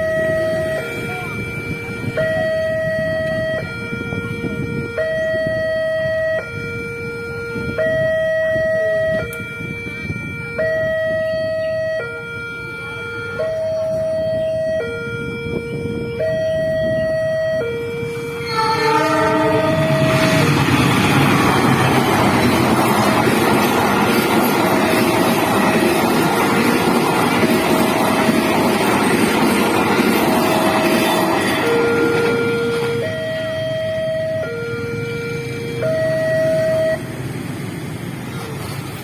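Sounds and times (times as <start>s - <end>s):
two-tone level-crossing siren: 0.0s - 37.2s
passing train rumble: 0.0s - 39.0s.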